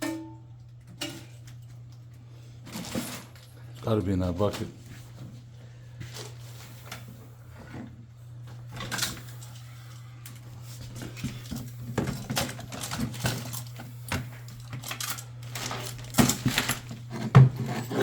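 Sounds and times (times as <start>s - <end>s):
tools clinking in a bucket: 11.5s - 16.9s.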